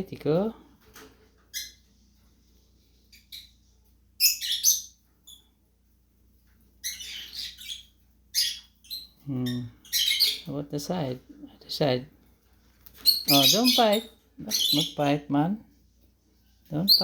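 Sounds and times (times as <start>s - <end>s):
cockatiel chirps and squawks: 4.2s - 5.4s, 6.8s - 9.2s.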